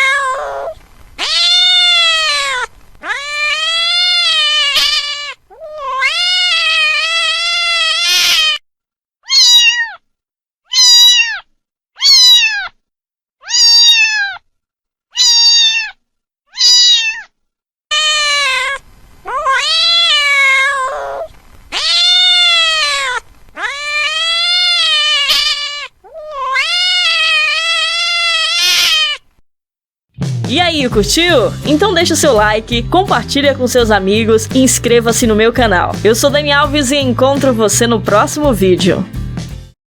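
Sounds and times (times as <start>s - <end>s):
cat meowing: 0.0s - 8.6s, 9.2s - 10.0s, 10.7s - 12.8s, 13.4s - 14.5s, 15.1s - 29.4s.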